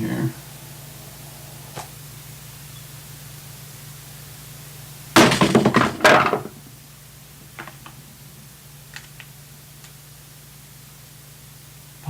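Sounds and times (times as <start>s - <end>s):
loud crashing impacts: 5.2s - 6.6s.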